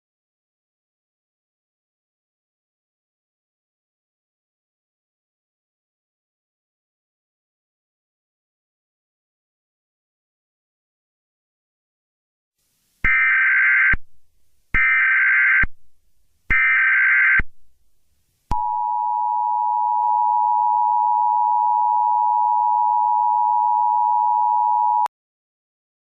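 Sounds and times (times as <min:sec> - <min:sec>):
two-tone attention signal: 0:18.5 - 0:25.1.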